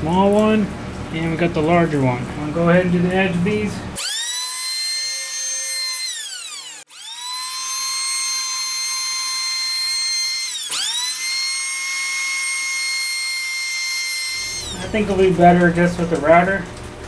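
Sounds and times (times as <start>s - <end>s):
electric hand planer whining: 2.8s - 16.1s.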